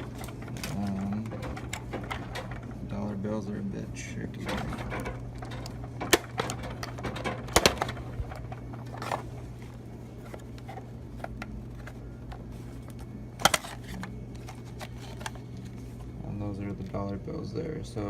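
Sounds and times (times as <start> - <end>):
steady low hum: 0.0 - 18.0
plastic box clicks and clacks: 4.4 - 9.2.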